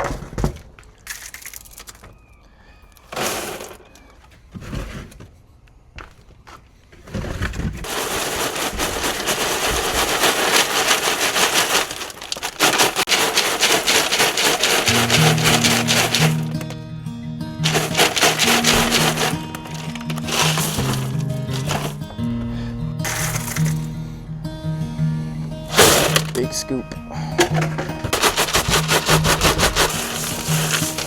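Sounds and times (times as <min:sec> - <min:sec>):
oyster shells clattering: 0:01.0 - 0:02.4, 0:07.8 - 0:16.8, 0:17.6 - 0:22.1, 0:23.1 - 0:24.0, 0:25.7 - 0:26.8, 0:27.4 - 0:31.0.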